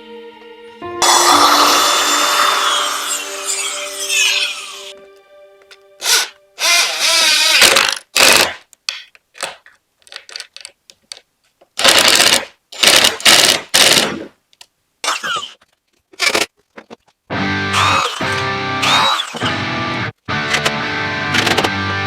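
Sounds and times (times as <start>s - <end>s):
electric jigsaw cutting plywood: 1.0s - 4.9s, 6.0s - 8.5s, 17.8s - 19.5s.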